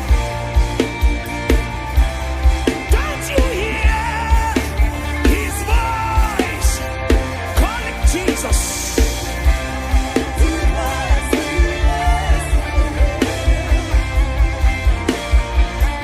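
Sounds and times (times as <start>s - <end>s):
sustained keyboard chords: 0.0s - 16.0s.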